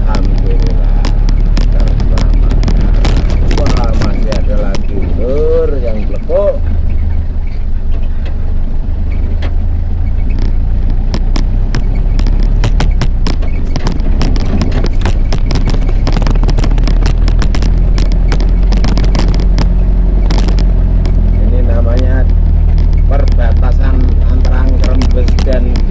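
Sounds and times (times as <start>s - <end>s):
rattles and knocks over bumps: 0.0s - 25.9s
vehicle engine and road rumble: 0.0s - 25.9s.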